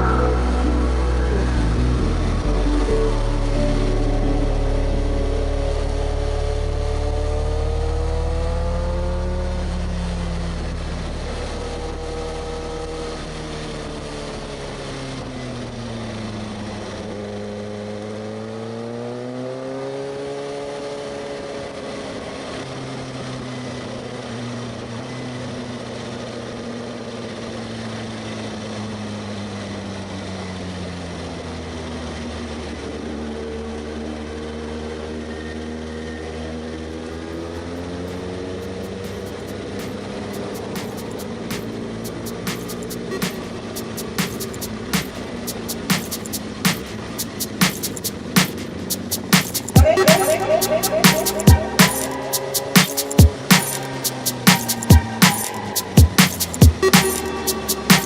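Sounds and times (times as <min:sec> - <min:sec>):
motorcycle engine running: 0:36.5 - 0:50.0
steady rushing noise: 0:37.2 - 0:58.0.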